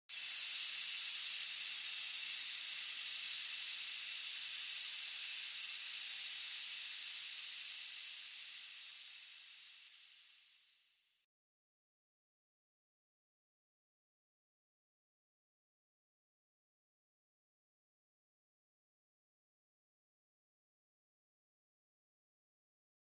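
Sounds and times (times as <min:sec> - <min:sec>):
pressurised air hissing: 0:00.1 - 0:11.1.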